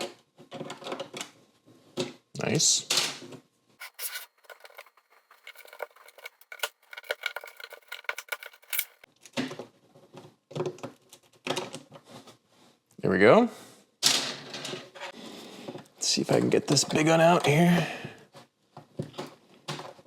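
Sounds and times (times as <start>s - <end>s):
plastic bricks clicking: 3.8s - 9.1s.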